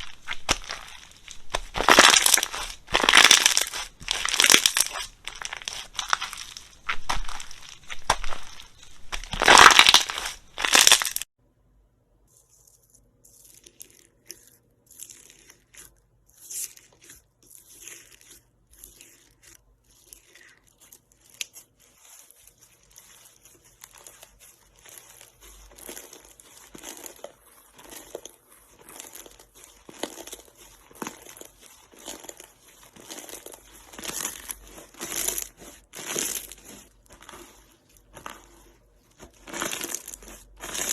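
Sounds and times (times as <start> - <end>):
slime crackles and pops: 0.0 - 11.3
slime crinkling and crunching: 0.0 - 11.3, 12.6 - 40.9.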